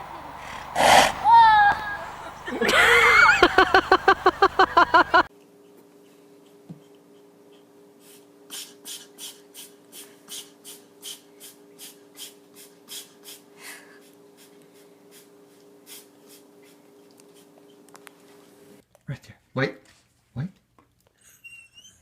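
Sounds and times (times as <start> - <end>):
faint steady hum: 0.0 - 5.3
animal sniffing or snorting: 0.4 - 1.3.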